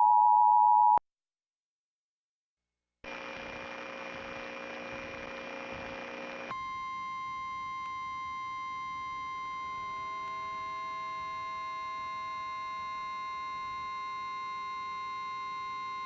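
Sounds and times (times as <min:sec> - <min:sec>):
faint steady hum: 0:06.5 - 0:16.0.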